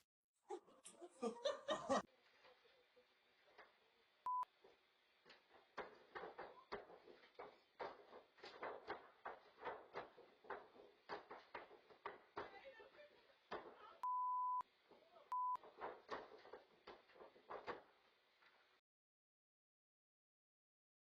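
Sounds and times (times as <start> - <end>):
censor bleep: 4.3 - 4.5, 14.0 - 14.6, 15.3 - 15.6.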